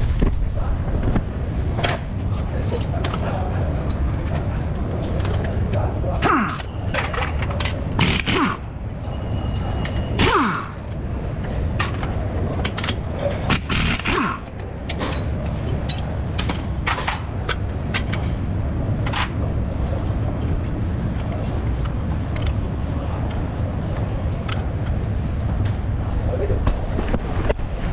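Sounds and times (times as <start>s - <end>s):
tools clanking on metal: 1.8s - 8.4s, 11.5s - 18.4s
impact wrench bursts: 8.0s - 8.7s, 13.5s - 14.5s.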